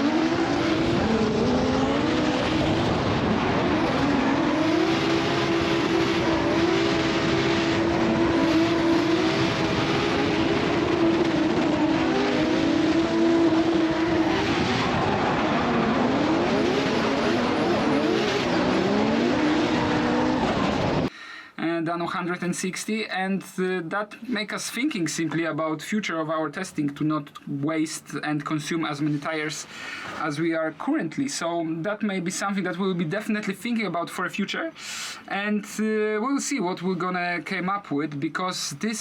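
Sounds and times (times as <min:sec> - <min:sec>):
car engine at high revs: 0:00.0 - 0:21.1
second car engine: 0:00.0 - 0:21.1
tire noise: 0:00.0 - 0:21.1.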